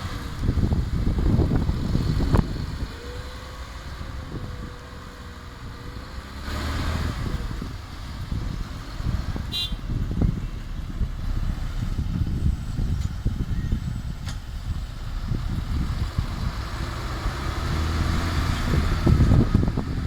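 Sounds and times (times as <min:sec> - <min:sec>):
diesel truck engine rumbling: 0:00.0 - 0:20.0
knocks and clunks: 0:09.0 - 0:15.6.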